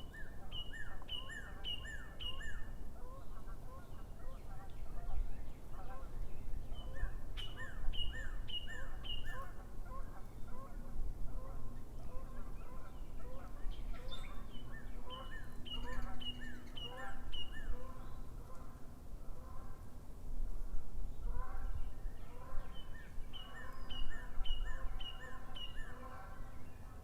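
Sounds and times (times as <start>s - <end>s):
birds calling faintly: 0.0s - 19.9s, 21.2s - 27.0s
bird singing down-slurred notes: 13.8s - 17.8s.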